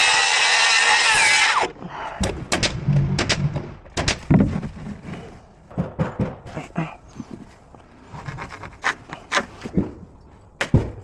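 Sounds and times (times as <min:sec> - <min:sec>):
knocks and bangs of framing: 0:02.2 - 0:04.9, 0:05.7 - 0:06.6.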